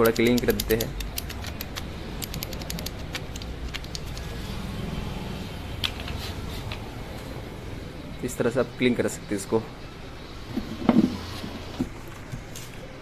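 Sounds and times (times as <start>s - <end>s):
metallic clicks and taps: 0.0s - 4.3s.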